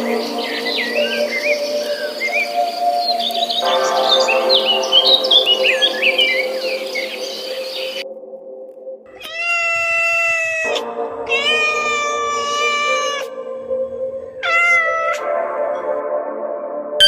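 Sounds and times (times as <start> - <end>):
background music: 0.0 - 17.0
cat meowing: 9.1 - 13.4, 14.4 - 15.4.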